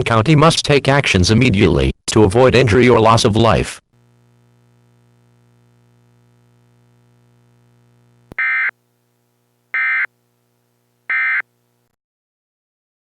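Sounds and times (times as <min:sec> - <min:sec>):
buzzy digital data bursts: 0:08.4 - 0:08.7, 0:09.8 - 0:10.1.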